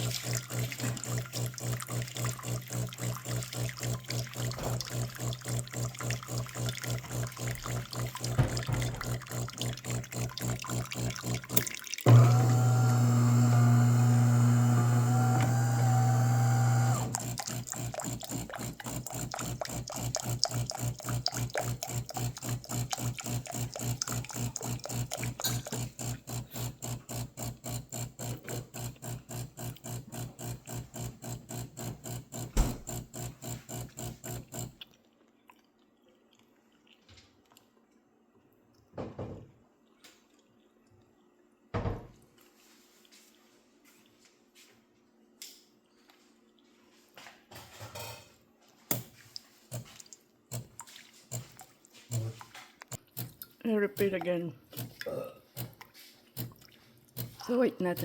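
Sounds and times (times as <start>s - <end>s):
espresso machine pump humming: 0.0s - 34.8s.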